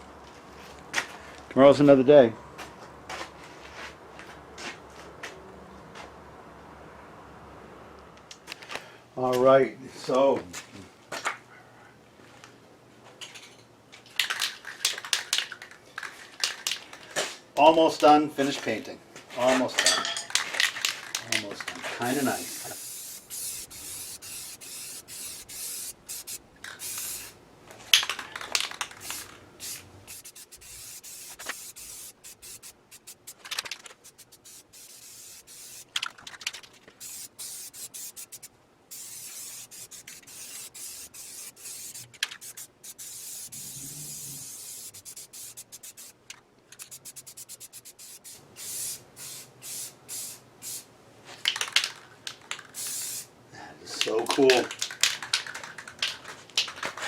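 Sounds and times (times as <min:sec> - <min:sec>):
spray paint hissing: 0:22.0 - 0:27.4, 0:28.6 - 0:36.1, 0:37.0 - 0:46.2, 0:46.8 - 0:50.9, 0:52.6 - 0:53.3.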